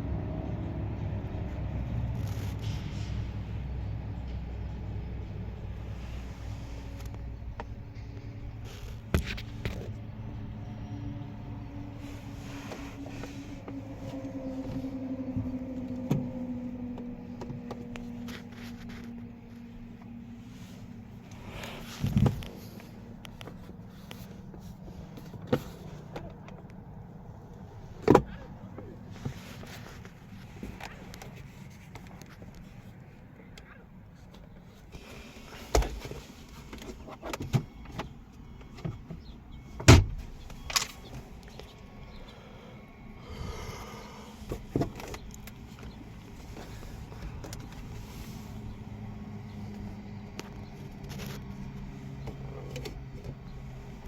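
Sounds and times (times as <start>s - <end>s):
car clunks and knocks: 28.0s - 28.9s, 37.2s - 40.6s.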